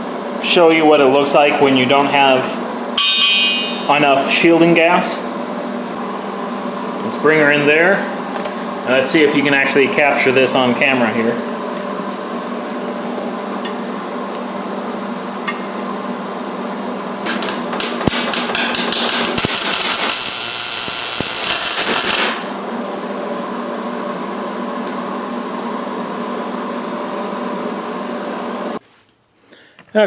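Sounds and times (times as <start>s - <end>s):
shop fans humming: 0.0s - 30.0s
welding arc crackling: 17.2s - 22.6s.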